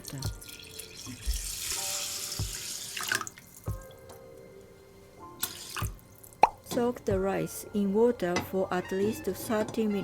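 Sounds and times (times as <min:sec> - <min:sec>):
water pouring into pot: 0:00.0 - 0:04.0, 0:05.4 - 0:06.4.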